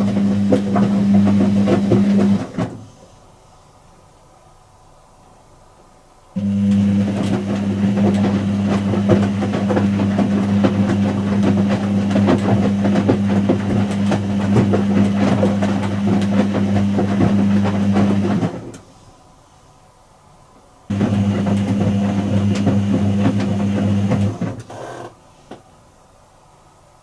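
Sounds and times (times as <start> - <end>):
washing machine drum motor humming: 0.0 - 2.8, 6.4 - 18.8, 20.9 - 24.7.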